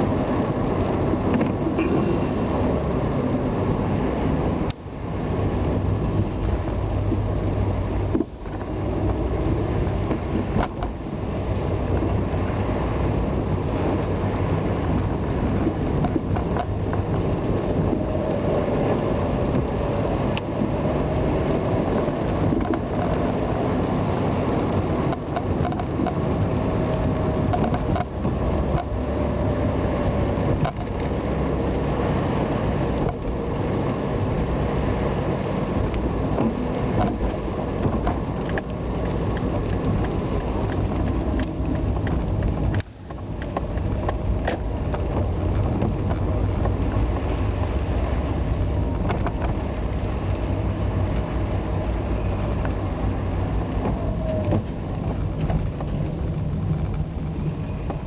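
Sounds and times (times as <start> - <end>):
vehicle road noise on wet roads: 0.0 - 58.0
clicks and rattles: 22.3 - 23.4, 24.5 - 29.0, 35.8 - 49.7.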